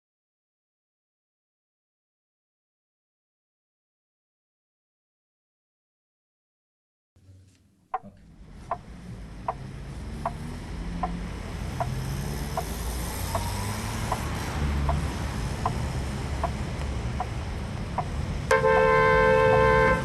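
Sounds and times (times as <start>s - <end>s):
steady ticking clicks: 8.0s - 18.6s.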